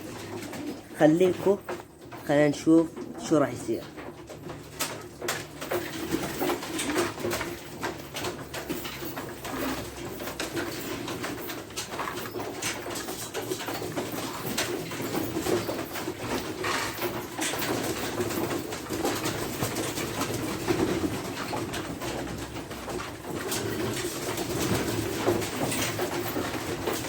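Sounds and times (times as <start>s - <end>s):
pigeons cooing: 0.0s - 1.0s, 8.7s - 27.0s.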